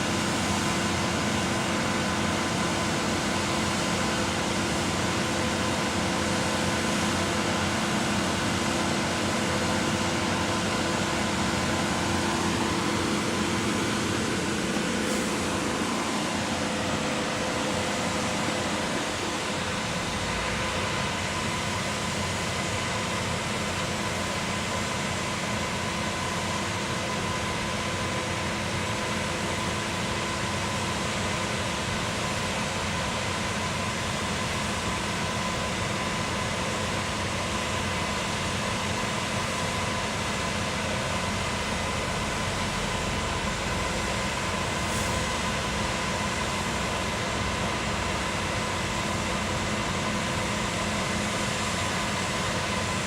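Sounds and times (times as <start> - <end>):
concrete pump mechanical drone: 0.0 - 53.0.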